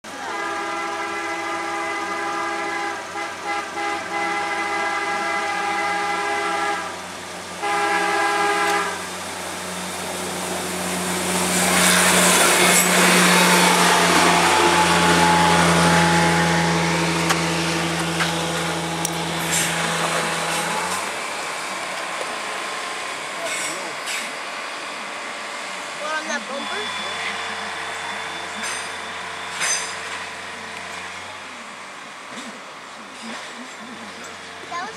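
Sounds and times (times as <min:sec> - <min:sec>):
engine drone: 0:00.0 - 0:34.9
wheels on rail rushing: 0:00.0 - 0:34.9
rail vehicle horn blasts: 0:00.1 - 0:22.0, 0:26.0 - 0:31.2.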